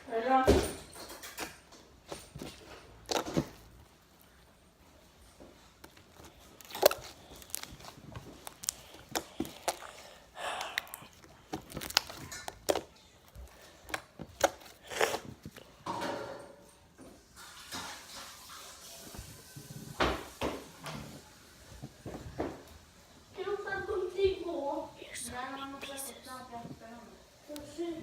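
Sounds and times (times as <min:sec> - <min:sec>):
rustling: 0:01.7 - 0:16.0
hands handling slime: 0:02.0 - 0:04.5, 0:05.2 - 0:15.7.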